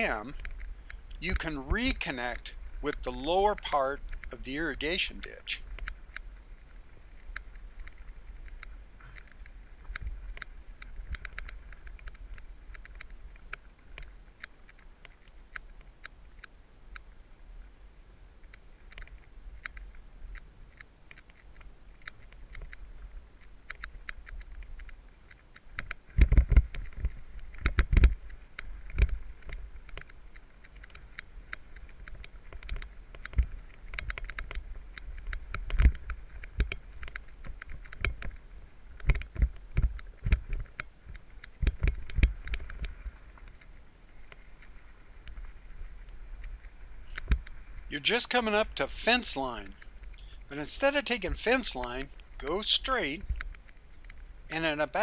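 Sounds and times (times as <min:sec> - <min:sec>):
bike rattling and clicking: 0:05.6 - 0:17.1, 0:18.5 - 0:47.9.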